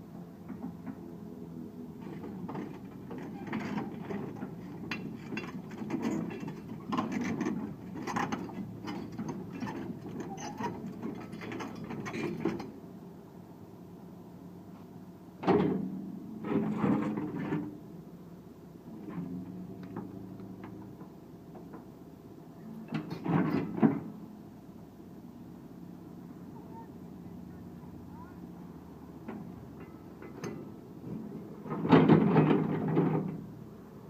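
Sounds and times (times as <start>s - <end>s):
excavator diesel engine running: 0.0s - 12.8s
metallic clanks and knocks: 2.0s - 12.7s, 15.4s - 17.7s, 29.2s - 33.5s.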